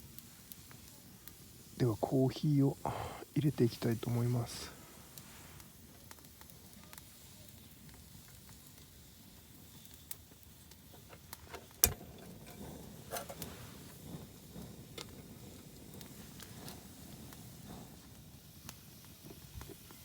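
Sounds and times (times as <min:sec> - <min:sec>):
camp gear clicks and knocks: 0:10.9 - 0:13.5.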